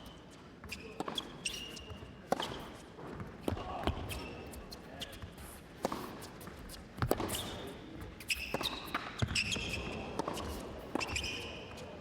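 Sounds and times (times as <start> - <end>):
shoes squeaking on court: 0.0 - 3.3, 5.9 - 11.9.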